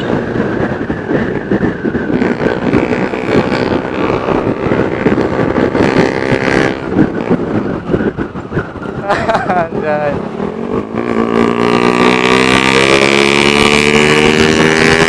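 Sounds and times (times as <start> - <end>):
motorcycle racing exhaust: 0.0 - 15.0
wind buffeting microphone: 0.0 - 15.0.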